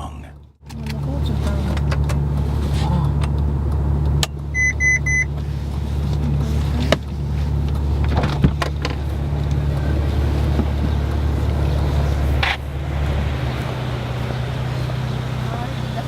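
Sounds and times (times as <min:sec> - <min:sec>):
car engine idling: 0:00.0 - 0:16.0
sharp clicks and knocks: 0:00.6 - 0:02.4, 0:06.9 - 0:11.6
short electronic beeps: 0:04.5 - 0:05.3.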